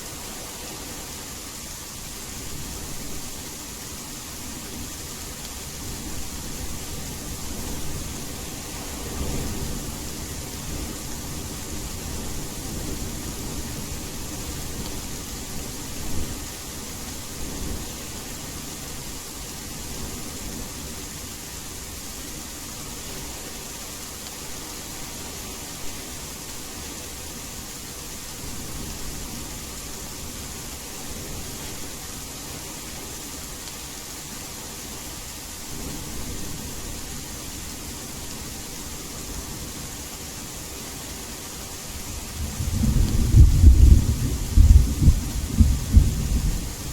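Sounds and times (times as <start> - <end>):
rain hiss: 0.0 - 46.9
distant thunder rumbling: 42.2 - 46.9.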